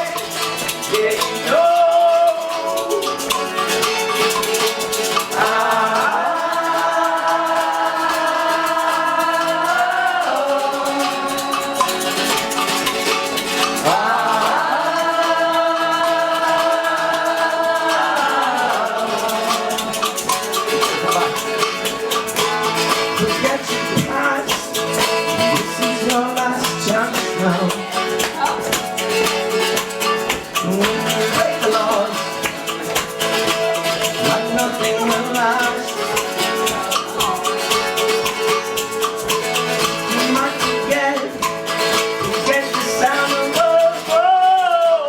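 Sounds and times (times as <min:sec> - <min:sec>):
guitar: 0:00.0 - 0:45.0
shaker rhythm: 0:00.0 - 0:45.0
voices holding a chord: 0:00.0 - 0:45.0.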